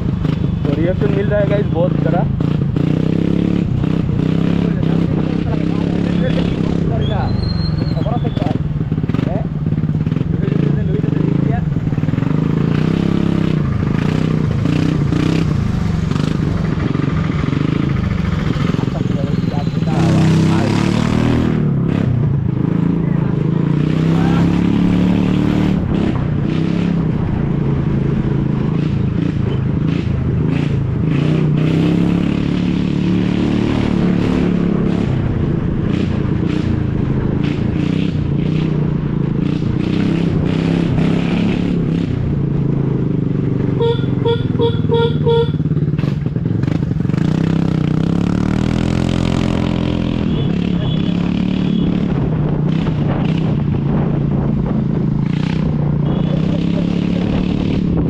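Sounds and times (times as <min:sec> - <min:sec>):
scooter engine running loud: 0:43.0 - 0:52.1, 0:55.0 - 0:58.0
vehicle horn beeps: 0:43.8 - 0:45.7, 0:56.0 - 0:56.5.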